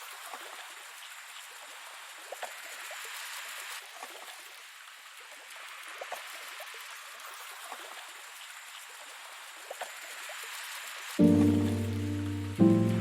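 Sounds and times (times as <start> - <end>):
rain drips and splashes: 0.0 - 13.0
rain falling: 11.1 - 13.0.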